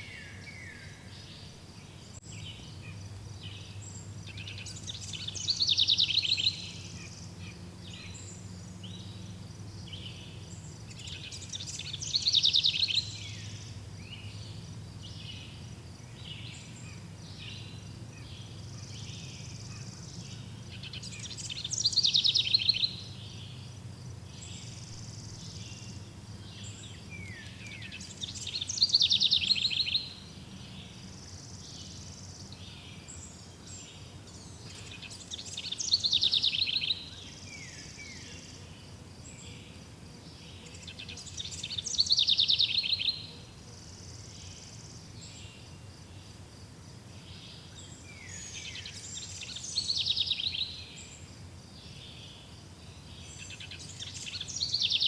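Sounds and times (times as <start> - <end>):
insect-like buzzing hum: 0.2 - 55.0
songbird trilling: 2.2 - 31.0, 31.6 - 38.5, 40.6 - 43.4, 47.6 - 51.1, 53.2 - 55.0.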